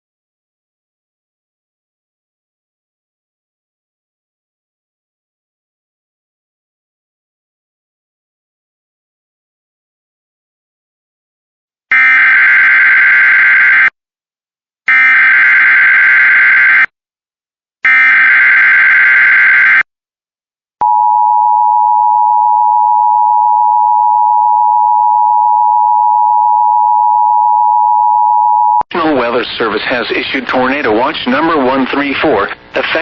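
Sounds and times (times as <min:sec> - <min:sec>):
long steady alert tone: 0:20.8 - 0:28.8.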